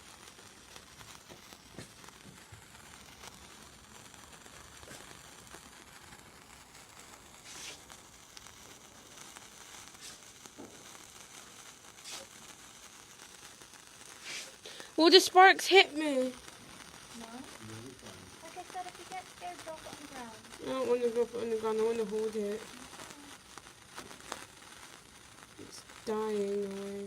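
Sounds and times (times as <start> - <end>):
sparkler fizzing and crackling: 0.0 - 27.0
brief loud hisses: 7.4 - 7.9, 10.0 - 10.3, 12.0 - 12.4, 14.2 - 15.0.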